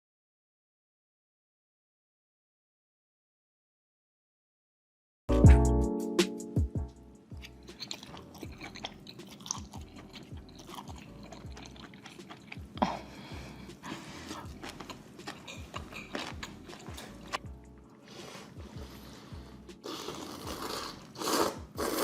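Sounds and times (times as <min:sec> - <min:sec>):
person chewing food: 0:07.3 - 0:22.0.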